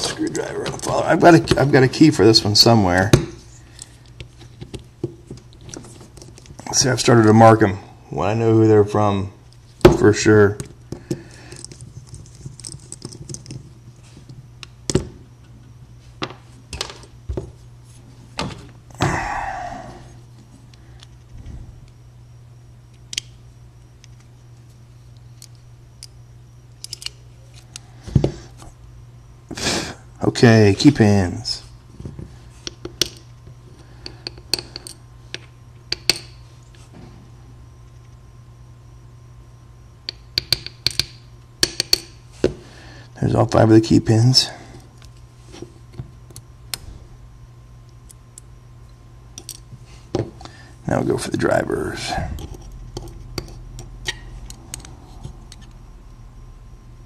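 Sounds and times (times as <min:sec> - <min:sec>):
steady low hum: 0:00.0 - 0:57.0
metal parts clicking and tapping: 0:10.6 - 0:13.6, 0:26.8 - 0:27.8, 0:34.0 - 0:36.4, 0:40.1 - 0:42.2, 0:49.4 - 0:50.2.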